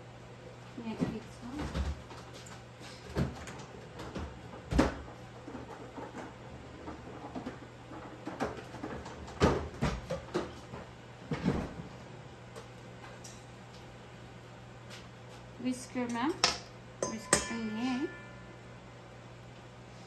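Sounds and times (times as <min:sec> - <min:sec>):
low steady hum: 0:00.0 - 0:20.0
dishes and utensils knocking: 0:16.2 - 0:18.5.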